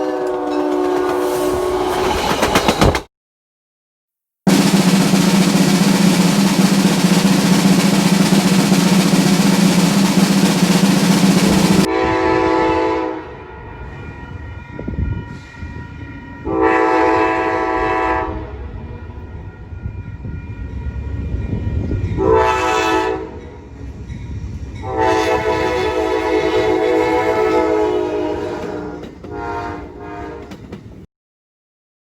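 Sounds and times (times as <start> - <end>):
multi-chime train horn: 0.0 - 1.8, 11.9 - 23.6, 24.8 - 30.5
rumble of passing train: 0.0 - 3.1, 4.5 - 31.1
loud drum roll: 0.4 - 3.1, 4.5 - 11.9.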